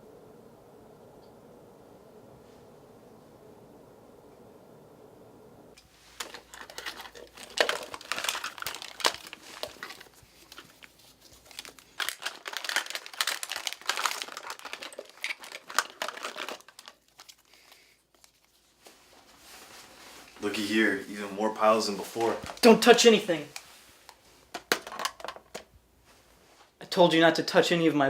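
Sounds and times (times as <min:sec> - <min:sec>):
crinkling and rustling belongings: 0:05.8 - 0:26.8.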